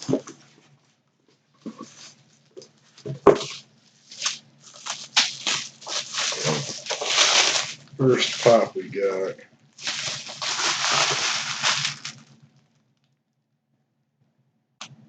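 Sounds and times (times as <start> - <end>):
cardboard tearing and rustling: 3.4 - 8.7, 9.8 - 12.3.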